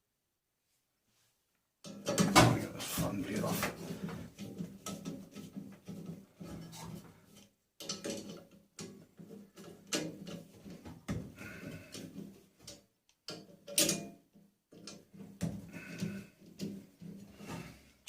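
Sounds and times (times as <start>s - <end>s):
tools clicking and scraping on metal: 4.3s - 10.8s, 11.6s - 17.3s.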